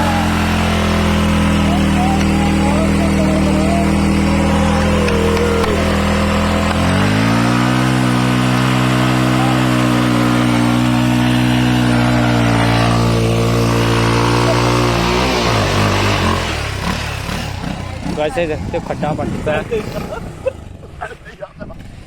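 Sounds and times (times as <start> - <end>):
wheel spinning on dirt: 0.0 - 20.9
motorcycle engine revving: 0.0 - 22.0.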